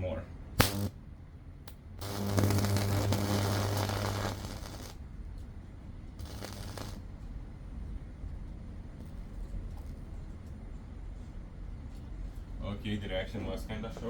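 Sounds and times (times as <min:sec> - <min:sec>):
deep mains hum: 0:00.0 - 0:14.0
electric arc crackling and buzzing: 0:00.6 - 0:01.0, 0:02.0 - 0:05.0, 0:06.2 - 0:07.1.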